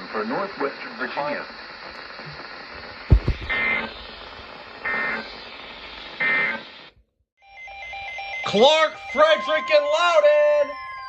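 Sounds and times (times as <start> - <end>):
radio hiss: 0.0 - 7.0
short low thump: 3.1 - 3.8
digital data tone bursts: 3.1 - 6.7.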